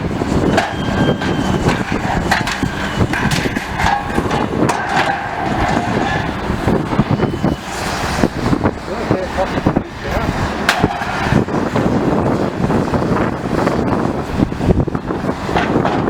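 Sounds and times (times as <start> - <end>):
excavator running: 0.0 - 16.0
high squeals: 0.2 - 9.0
debris crunching and knocking: 0.3 - 7.8.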